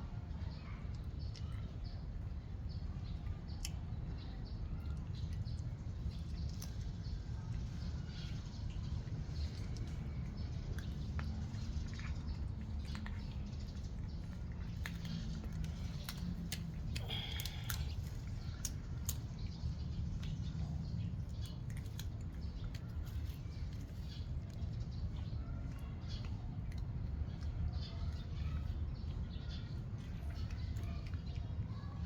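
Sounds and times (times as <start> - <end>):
low background rumble: 0.0 - 32.0
cats chewing and lapping: 0.1 - 32.0.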